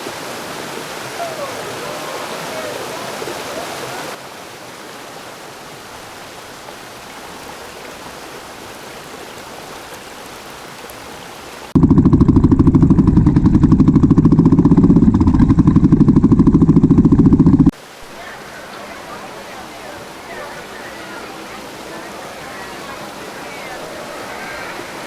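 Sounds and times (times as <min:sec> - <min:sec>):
waterfall rushing: 0:00.0 - 0:11.8, 0:17.7 - 0:25.0
low rapidly pulsing rumble: 0:11.8 - 0:17.7.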